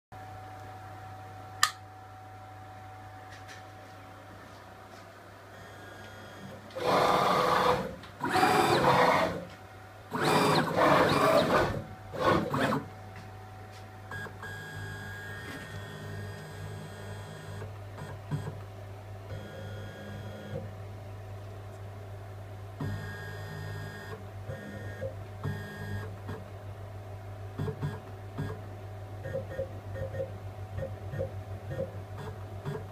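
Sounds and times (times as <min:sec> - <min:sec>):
machine whine: 0:05.5 - 0:12.9
stepper motor bursts: 0:06.8 - 0:09.5, 0:10.1 - 0:12.9.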